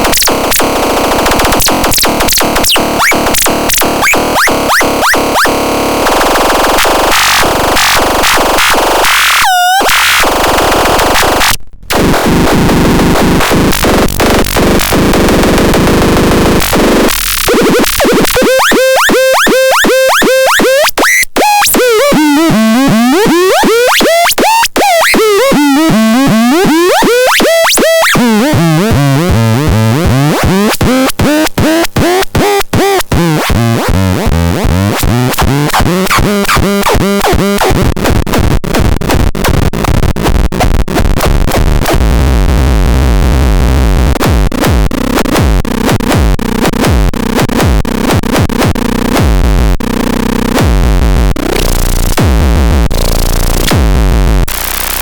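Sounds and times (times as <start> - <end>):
buzzy synthesizer texture: 0.0 - 38.1, 38.7 - 55.0
pulsing low bass: 50.6 - 54.5.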